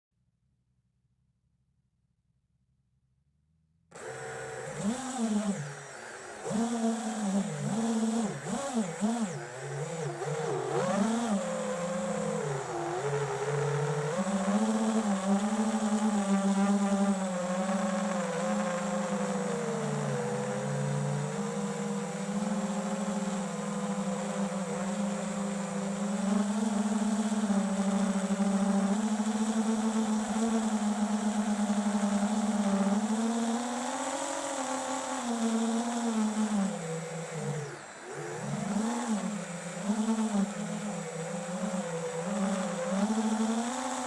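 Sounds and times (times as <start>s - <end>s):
quadcopter motors buzzing: 3.9s - 44.0s.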